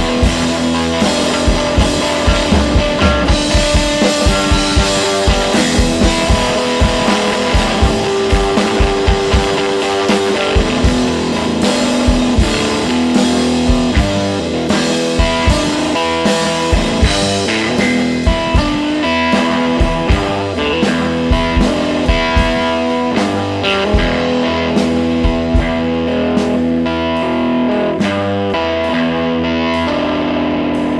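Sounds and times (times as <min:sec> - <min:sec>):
guitar rock music: 0:00.0 - 0:30.9.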